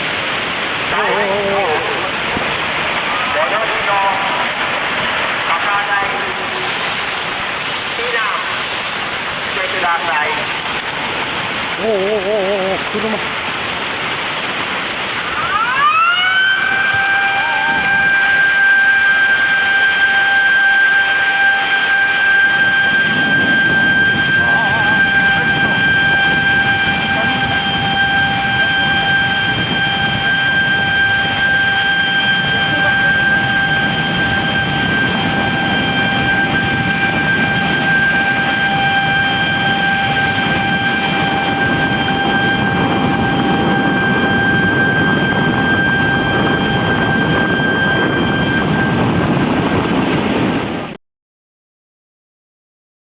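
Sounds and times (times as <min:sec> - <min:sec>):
floodwater rushing roar: 0:00.0 - 0:51.0
continuous high tone: 0:11.8 - 0:13.2, 0:15.3 - 0:49.5.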